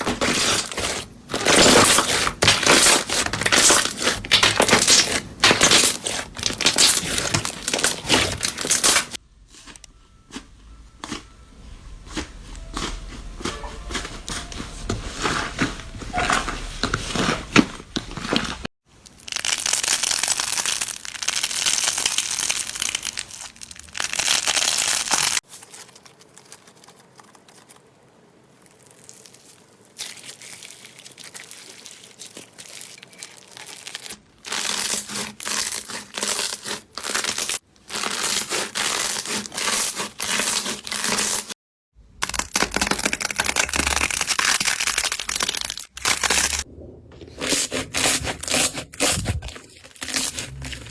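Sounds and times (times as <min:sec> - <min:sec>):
slime crackling when squeezed: 0:19.1 - 0:39.1, 0:42.2 - 0:46.6.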